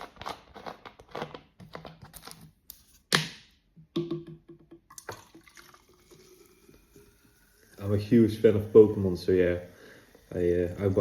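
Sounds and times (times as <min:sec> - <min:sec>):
plastic bottles clicking and tapping: 0:03.1 - 0:05.5
sharp hiss of carbonation: 0:06.2 - 0:11.0.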